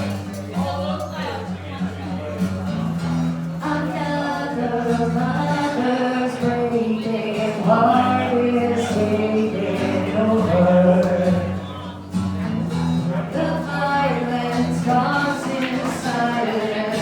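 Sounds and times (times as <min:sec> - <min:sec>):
acoustic guitar: 0:00.0 - 0:17.0
person singing: 0:03.6 - 0:11.6, 0:13.3 - 0:17.0.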